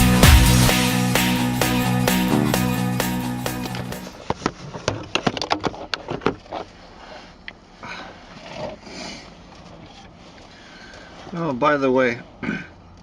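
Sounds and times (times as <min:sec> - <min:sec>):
electronic dance music: 0:00.0 - 0:04.1.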